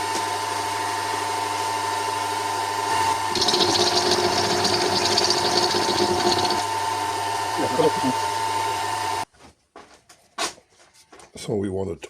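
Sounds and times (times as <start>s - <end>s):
milling machine motor whine: 3.1s - 9.2s
cutter cutting metal: 3.3s - 6.8s.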